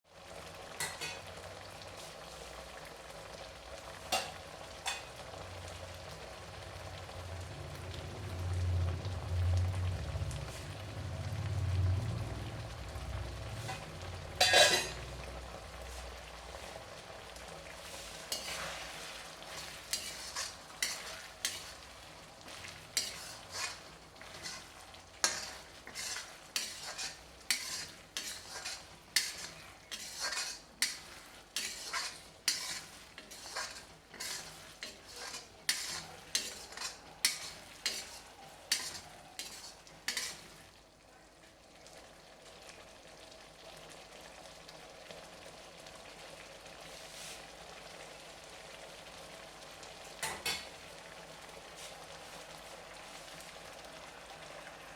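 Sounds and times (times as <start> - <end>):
curry sizzling in a pan: 0.0 - 54.9
utensil scraping a pan: 13.5 - 15.2, 17.7 - 40.7.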